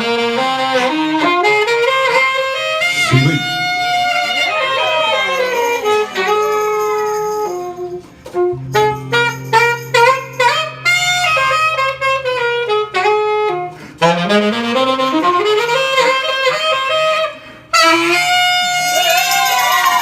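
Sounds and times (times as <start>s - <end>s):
saxophone melody: 0.0s - 19.5s
held low bass note: 2.9s - 4.0s.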